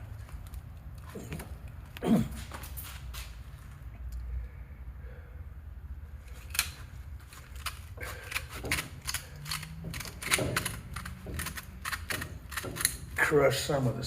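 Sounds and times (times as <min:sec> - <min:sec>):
pistol parts clicking metallically: 0:06.3 - 0:13.3.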